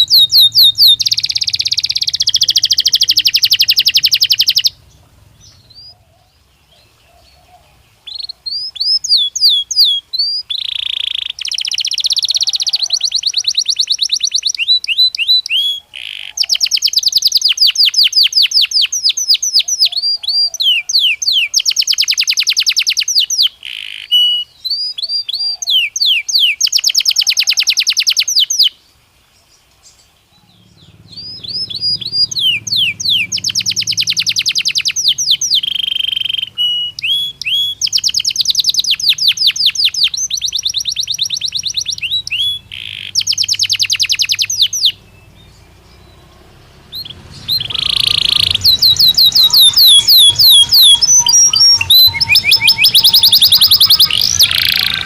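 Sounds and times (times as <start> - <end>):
canary singing trills: 0.0 - 28.8, 29.8 - 55.0.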